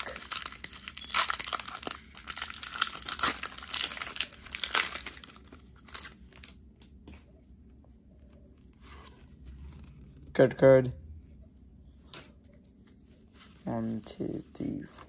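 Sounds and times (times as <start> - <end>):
foil wrapper crinkling: 0.0 - 6.6.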